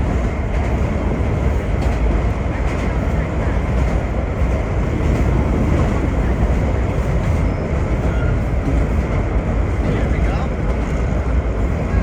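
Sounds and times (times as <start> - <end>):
subway train wheels rumbling: 0.0 - 12.0.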